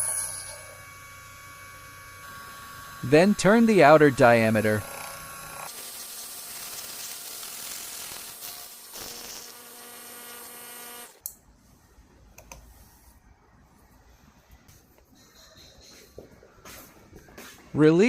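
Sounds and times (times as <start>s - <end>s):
lathe motor whining: 0.0s - 5.7s, 9.4s - 11.2s.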